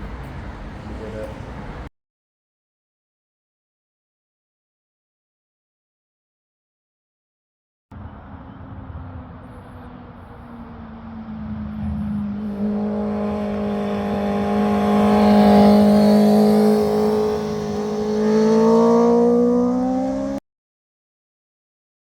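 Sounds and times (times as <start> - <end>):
motorcycle engine running: 11.8 - 20.4.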